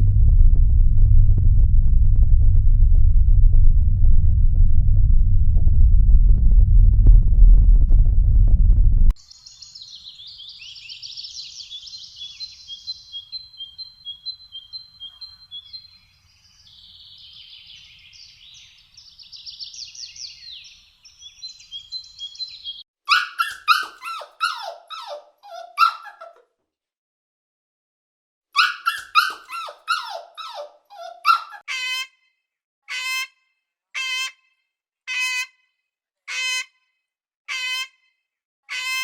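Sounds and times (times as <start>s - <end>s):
small bird twittering: 9.2s - 26.2s, 28.6s - 31.6s
dog yelping: 23.1s - 26.4s, 28.6s - 31.7s.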